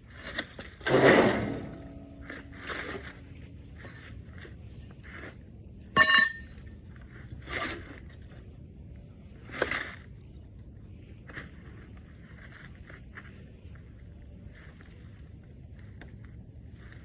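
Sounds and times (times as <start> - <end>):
metal scraping and clinking: 0.1 - 3.4, 6.0 - 6.6
loud metal clang: 0.8 - 3.0.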